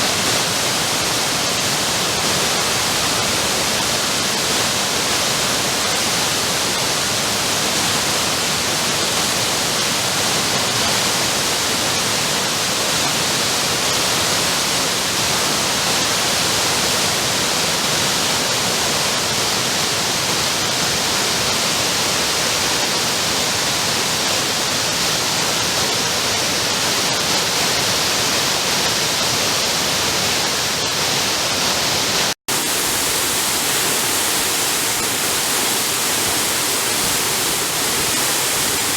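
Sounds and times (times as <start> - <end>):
waterfall rushing: 17.3 - 38.9.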